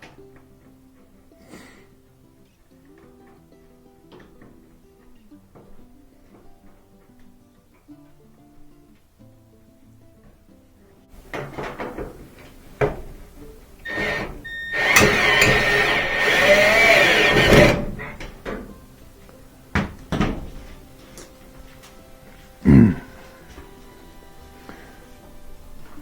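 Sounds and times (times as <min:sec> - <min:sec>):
metal panels knocking: 0:11.2 - 0:18.8
metal scraping and rattling: 0:11.2 - 0:18.8.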